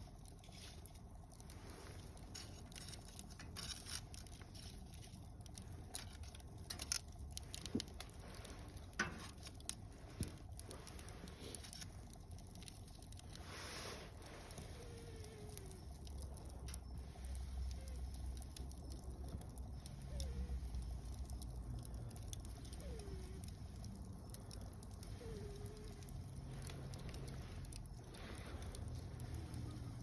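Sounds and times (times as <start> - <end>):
fire crackling and popping: 0.0 - 30.0
low rumble of fire: 0.0 - 30.0.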